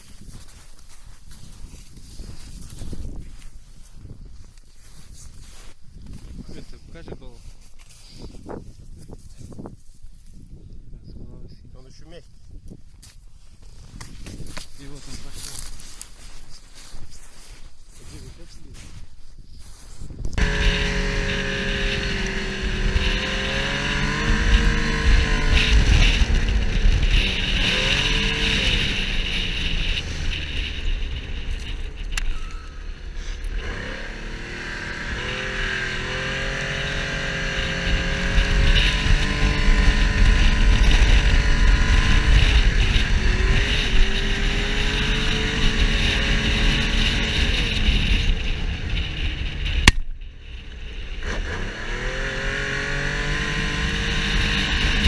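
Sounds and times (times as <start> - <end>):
snowmobile engine running hard: 20.4 - 55.0.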